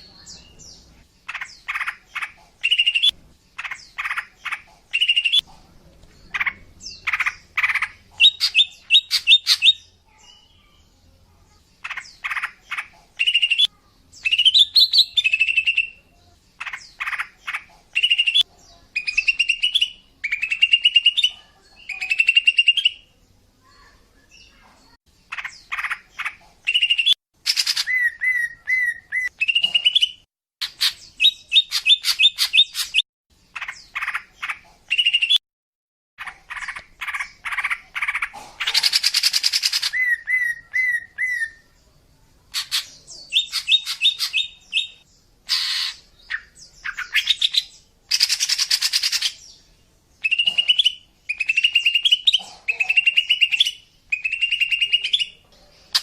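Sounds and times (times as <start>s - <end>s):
bird chirping and trilling: 0.0s - 5.5s, 6.2s - 10.9s, 11.7s - 35.4s, 36.2s - 56.0s
bird harsh rasping call: 45.5s - 47.2s.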